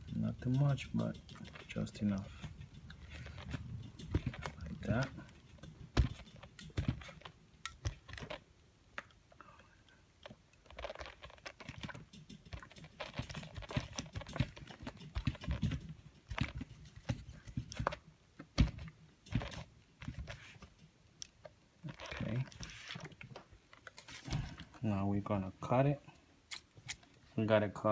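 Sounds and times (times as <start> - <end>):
papery rustling: 0.0 - 7.3, 21.9 - 24.8
iron clicking and knocking: 0.0 - 8.2.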